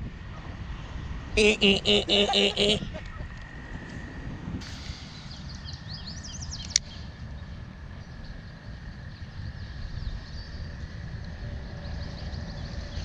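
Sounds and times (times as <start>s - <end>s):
steady low rumble: 0.0s - 13.0s
small birds chirping: 4.8s - 13.0s.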